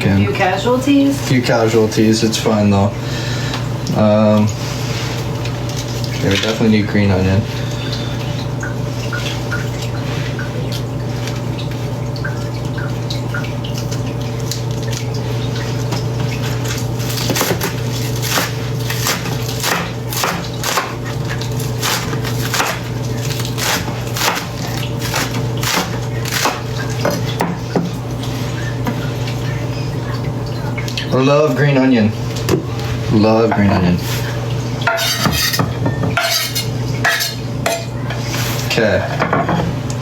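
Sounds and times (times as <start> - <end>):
knife chopping on cutting board: 17.2 - 21.0, 21.8 - 22.9, 23.6 - 27.6, 34.9 - 37.9.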